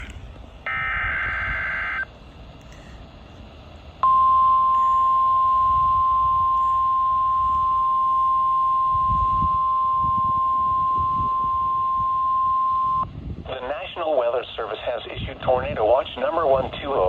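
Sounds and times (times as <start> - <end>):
steady alarm beep: 0.7 - 2.1, 4.0 - 13.1.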